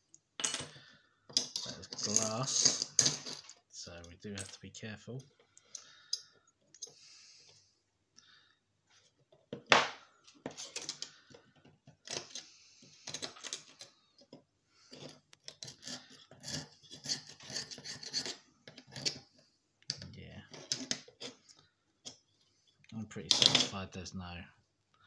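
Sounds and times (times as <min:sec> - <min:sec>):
glass and plastic pieces scraping: 0:00.6 - 0:03.7, 0:09.0 - 0:23.8.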